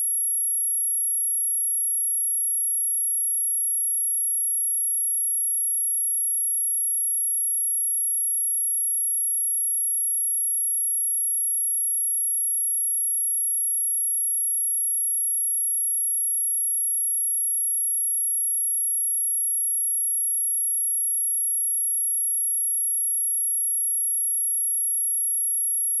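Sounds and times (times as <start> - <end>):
high-pitched sine test tone: 0.0 - 2.1, 10.8 - 26.0.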